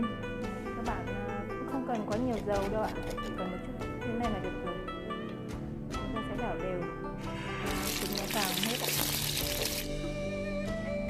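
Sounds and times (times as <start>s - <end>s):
background music: 0.0s - 11.0s
eggs sizzling in oil: 7.4s - 10.0s.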